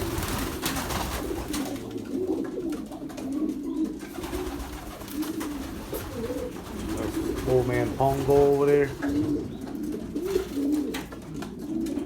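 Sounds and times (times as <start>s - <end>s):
pigeons cooing: 0.0s - 12.0s.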